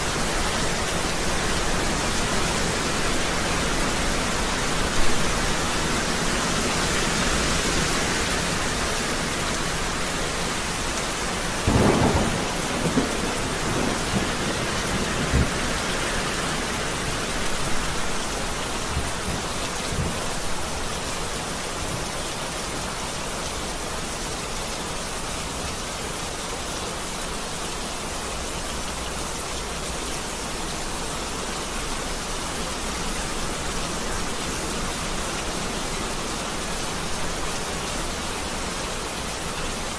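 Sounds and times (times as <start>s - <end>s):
rain falling: 0.0s - 39.9s
thunder rumbling: 11.6s - 18.0s.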